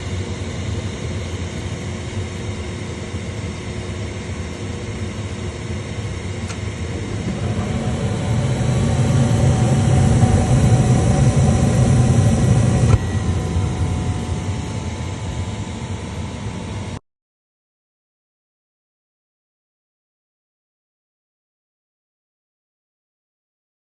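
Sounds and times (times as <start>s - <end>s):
furnace inducer hum: 0.0s - 17.0s
burners lighting with low rush: 5.9s - 16.7s.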